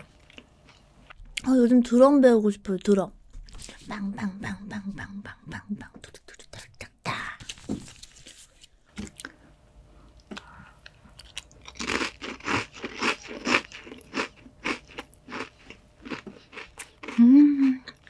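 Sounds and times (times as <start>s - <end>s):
chewing crunchy food: 0.0s - 1.5s, 10.1s - 18.0s.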